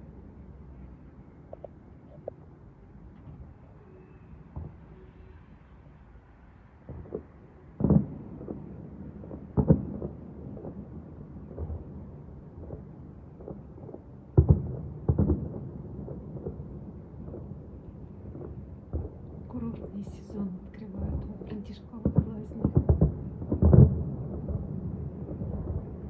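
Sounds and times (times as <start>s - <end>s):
distant fireworks booms: 4.5s - 4.9s, 6.8s - 26.0s.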